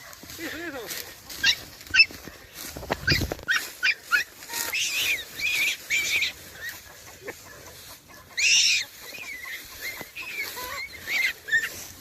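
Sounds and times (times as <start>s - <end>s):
dogs yelping: 0.0s - 12.0s
dogs whining: 1.4s - 2.1s, 3.0s - 6.8s, 8.1s - 11.9s.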